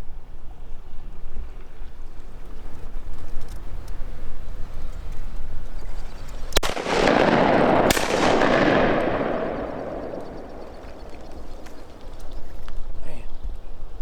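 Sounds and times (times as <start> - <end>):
shotgun shots: 6.6 - 12.2.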